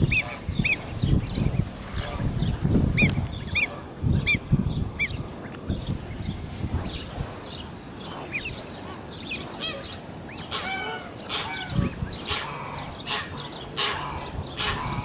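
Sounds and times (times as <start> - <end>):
goslings and ducklings peeping: 0.0 - 15.0.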